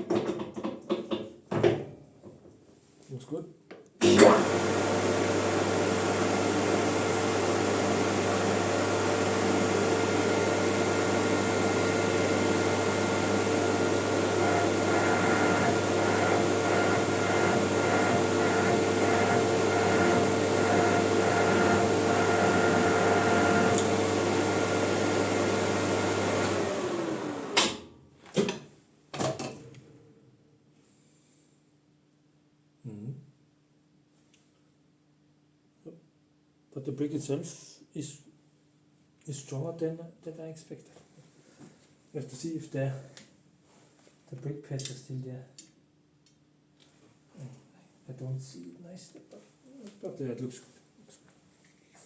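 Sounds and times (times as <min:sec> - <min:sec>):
metal lathe running: 0:06.4 - 0:27.5.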